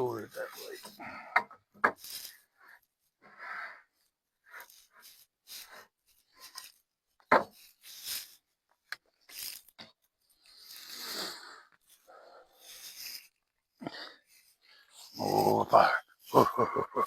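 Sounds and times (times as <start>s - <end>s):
hand tool scraping wood: 4.5s - 9.8s.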